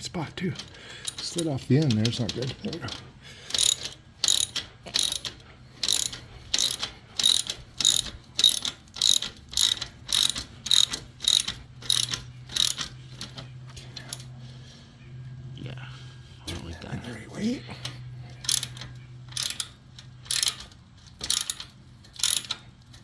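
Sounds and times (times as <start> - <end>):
ratchet wrench clicking: 0.6 - 14.3, 18.4 - 23.0.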